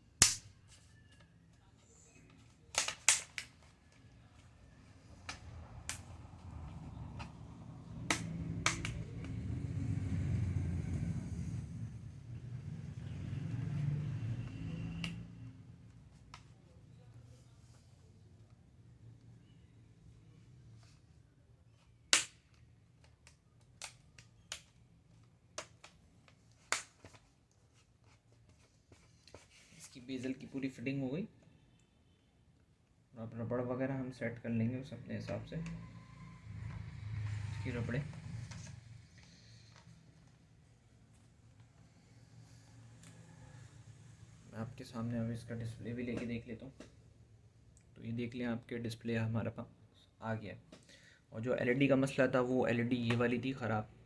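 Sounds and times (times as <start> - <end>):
plastic clips snapping into place: 2.7 - 3.5, 8.1 - 9.3.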